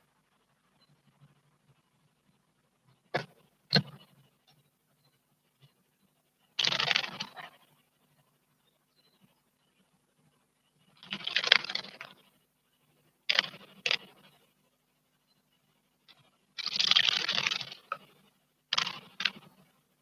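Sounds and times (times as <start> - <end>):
wings fluttering: 6.6 - 7.8, 10.9 - 12.4, 13.3 - 14.5, 16.1 - 19.7.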